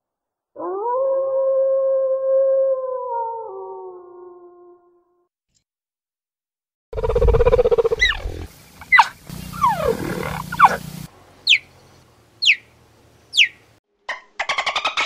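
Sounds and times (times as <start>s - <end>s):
sharp high calls: 7.9s - 11.7s
big cat growling: 9.6s - 10.8s.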